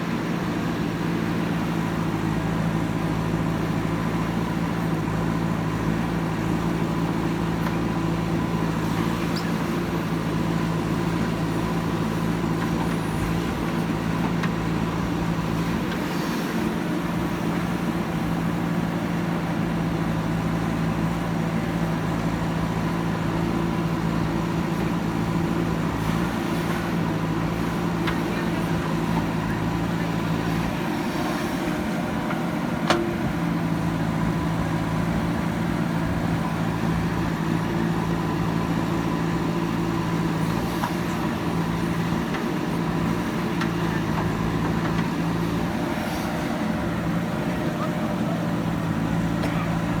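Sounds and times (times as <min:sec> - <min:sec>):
diesel engine running: 0:00.0 - 0:50.0.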